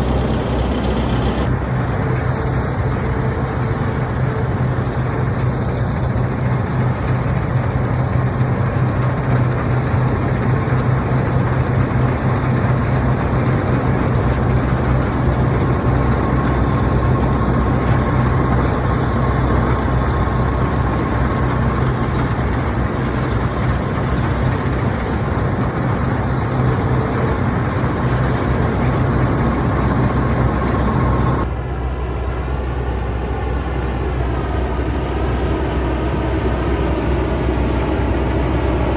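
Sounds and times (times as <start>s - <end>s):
combine harvester running: 0.0s - 38.9s.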